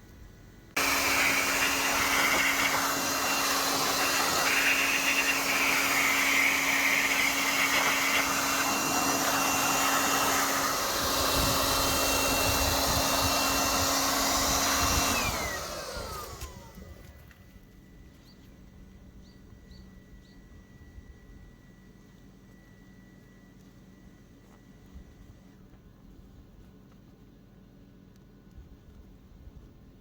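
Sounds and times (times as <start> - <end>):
car wash machine running: 0.8 - 17.4.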